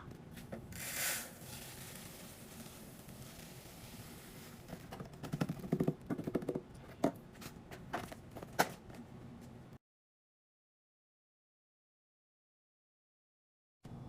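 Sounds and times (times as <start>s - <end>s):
items rattling and clattering: 4.6s - 9.0s.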